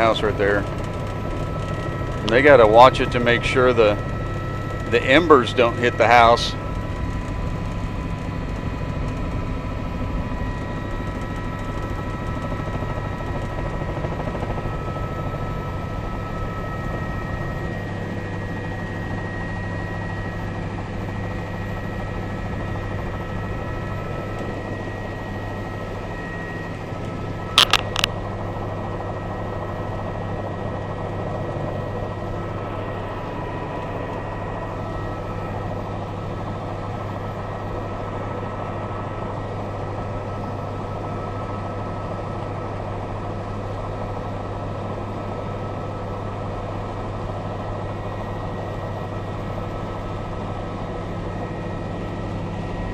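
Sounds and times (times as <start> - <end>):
constant whine: 0.0 - 52.9
helicopter rotor and engine drone: 0.0 - 52.9
sharp clicks: 27.6 - 28.1.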